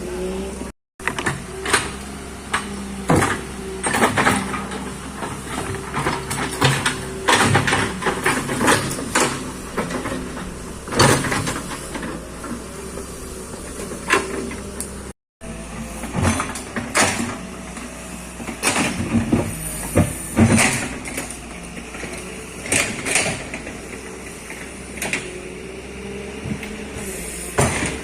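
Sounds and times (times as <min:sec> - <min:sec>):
excavator engine droning: 0:00.0 - 0:28.0
knocks and clatters: 0:01.0 - 0:12.7.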